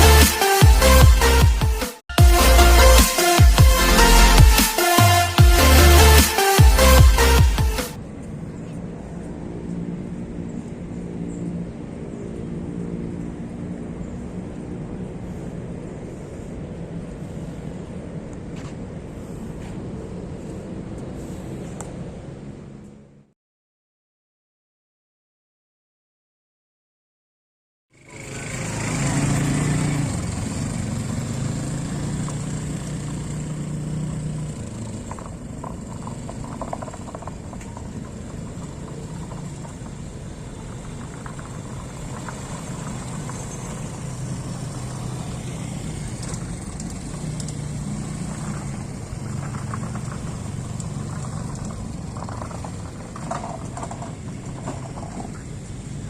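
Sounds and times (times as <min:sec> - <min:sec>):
atv engine revving: 0:00.0 - 0:01.5, 0:02.2 - 0:08.0, 0:28.0 - 0:56.0.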